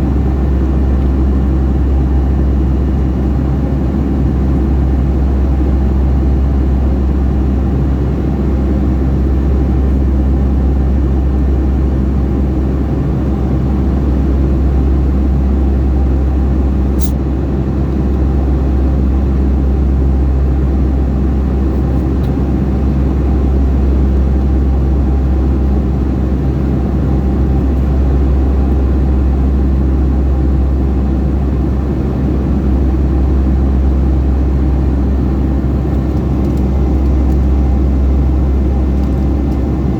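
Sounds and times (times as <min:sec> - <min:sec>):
aircraft cabin engine drone: 0:00.0 - 0:39.9
short click: 0:17.0 - 0:17.2.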